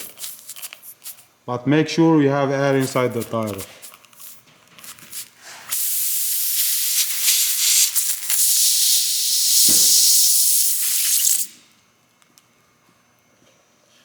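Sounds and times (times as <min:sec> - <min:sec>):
air hissing from tire puncture: 0:05.6 - 0:11.6
brief knock: 0:09.6 - 0:10.0.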